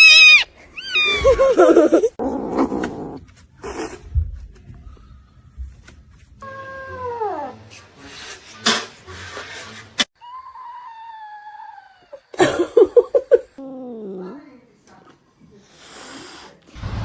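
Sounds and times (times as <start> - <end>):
cats yowling: 0.0 - 1.6, 10.2 - 12.4.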